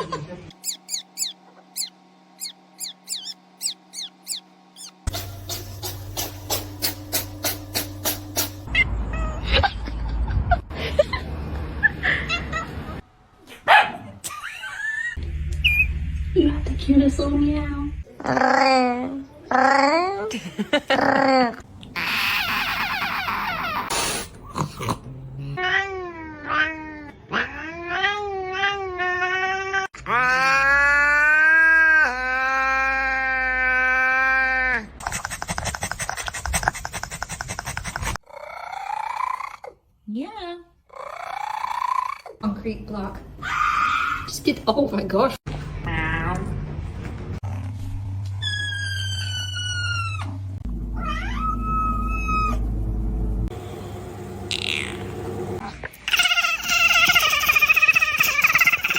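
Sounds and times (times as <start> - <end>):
cat yowling: 0.7 - 5.0, 48.4 - 52.6
low hum: 14.3 - 18.2, 45.5 - 55.8
cat meowing: 51.0 - 52.6.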